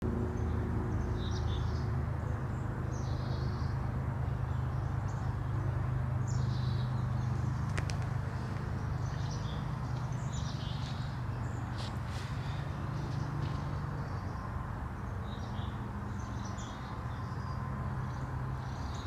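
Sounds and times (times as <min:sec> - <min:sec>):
birds chirping: 0:00.4 - 0:19.0
sharp clicks: 0:07.6 - 0:08.7.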